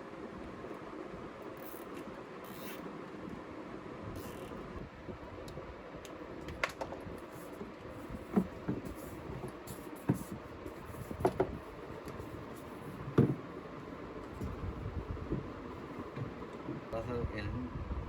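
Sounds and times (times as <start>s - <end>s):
workshop background noise: 6.5s - 14.6s.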